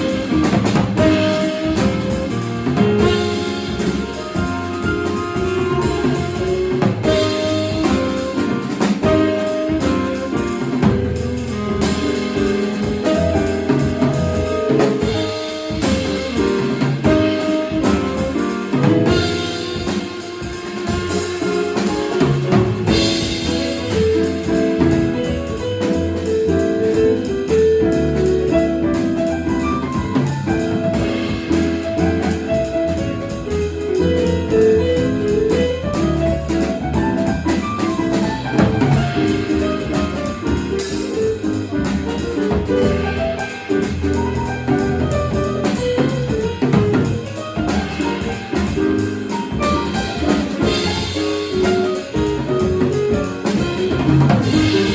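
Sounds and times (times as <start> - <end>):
drums and cymbals: 0.0 - 54.9
piano: 0.0 - 54.9.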